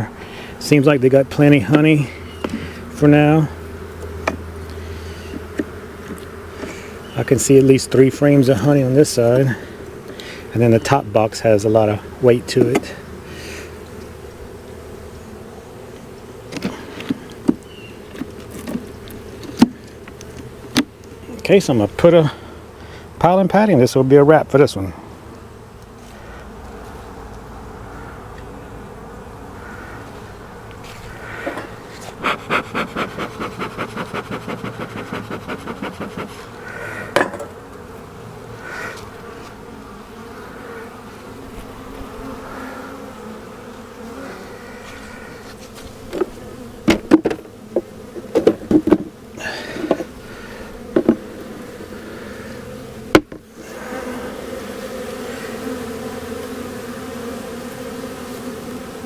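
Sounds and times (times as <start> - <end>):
bees buzzing: 0.0 - 59.0
hive parts knocking and clattering: 16.5 - 21.0, 37.1 - 37.8, 46.0 - 50.2, 50.8 - 51.5, 53.1 - 53.5.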